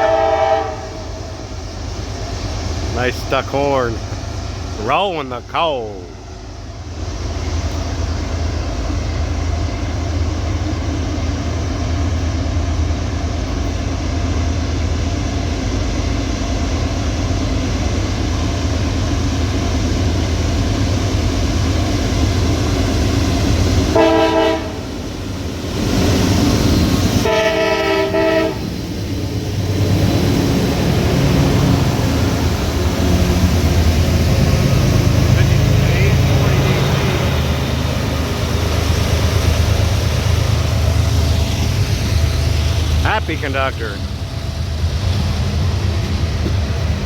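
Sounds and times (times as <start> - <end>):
locomotive air horn: 0.0 - 1.2, 23.9 - 24.9, 27.2 - 28.7
freight train rumbling on rails: 0.0 - 47.0.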